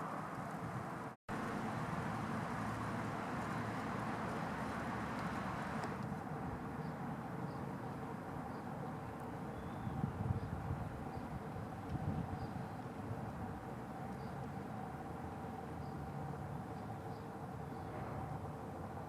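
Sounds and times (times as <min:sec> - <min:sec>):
outdoor rumble and hiss: 0:00.0 - 0:19.0.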